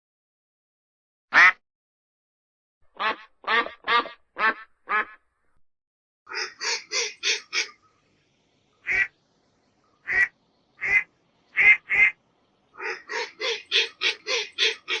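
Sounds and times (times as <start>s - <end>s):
duck quacking: 1.3s - 1.6s, 3.0s - 5.2s, 6.3s - 7.8s, 8.8s - 9.1s, 10.0s - 12.2s, 12.8s - 15.0s.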